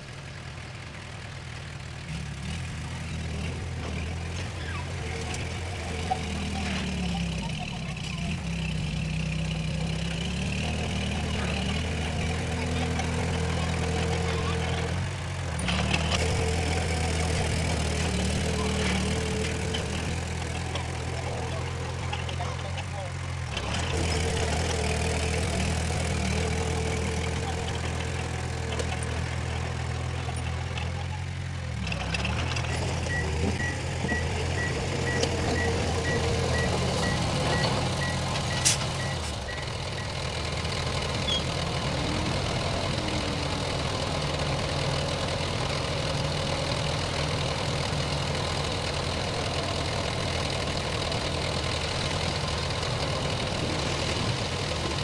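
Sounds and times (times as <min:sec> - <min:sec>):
heavy machinery diesel engines: 0:00.0 - 0:55.0
reversing alarm beeping: 0:32.7 - 0:40.2.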